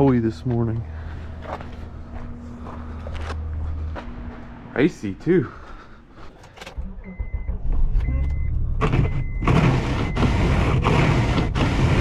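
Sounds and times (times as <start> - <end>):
vehicle engine rumble: 0.0 - 12.0
warning chime beeping: 6.8 - 10.4.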